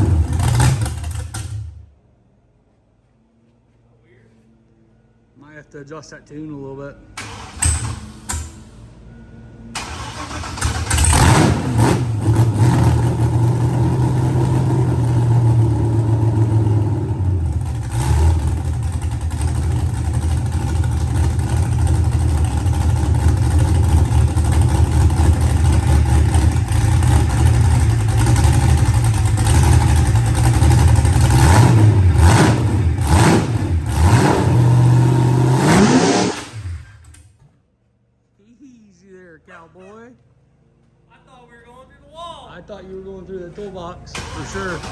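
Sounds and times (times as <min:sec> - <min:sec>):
engine revving loudly: 0:00.0 - 0:01.2, 0:10.1 - 0:18.8, 0:29.4 - 0:37.0.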